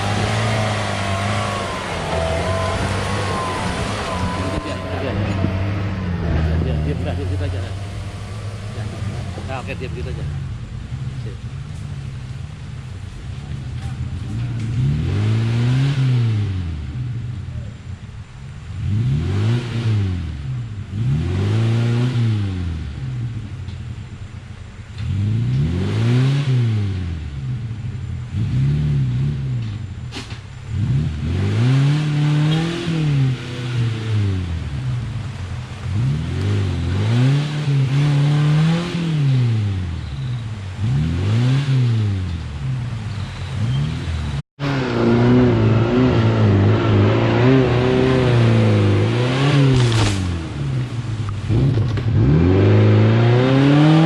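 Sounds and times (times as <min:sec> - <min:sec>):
off-road vehicle engine revving: 0:00.0 - 0:17.8, 0:18.5 - 0:54.0.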